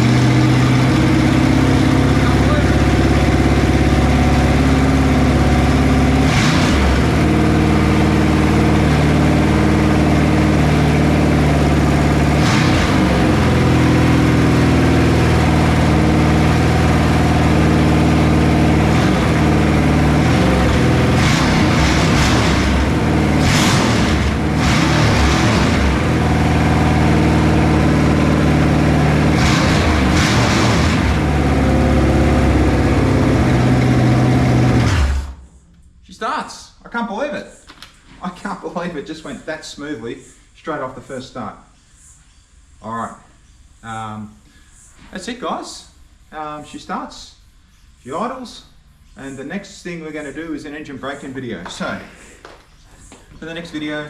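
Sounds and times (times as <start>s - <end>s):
loud engine idling: 0.0s - 35.6s
engine throttle blips: 0.0s - 36.0s.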